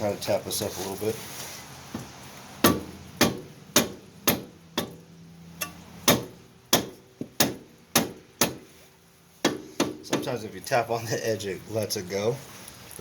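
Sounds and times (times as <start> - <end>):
rubber mallet striking metal: 2.6 - 5.0, 5.6 - 8.6.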